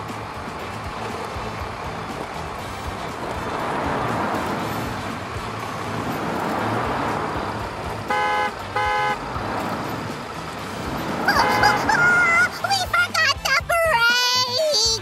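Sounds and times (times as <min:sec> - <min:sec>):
motor vehicle running: 0:00.0 - 0:15.0
short horn toots: 0:08.1 - 0:09.2.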